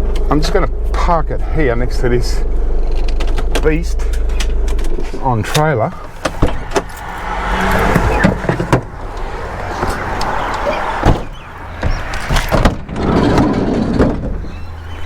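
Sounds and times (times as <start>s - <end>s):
van engine running low: 0.0s - 15.0s
sharp clicks and knocks: 2.8s - 14.7s.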